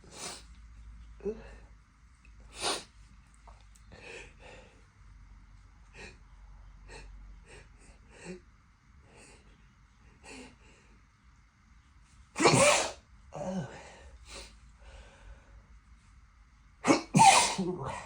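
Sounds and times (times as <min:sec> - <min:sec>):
person sniffing: 0:00.0 - 0:00.5, 0:02.5 - 0:03.0.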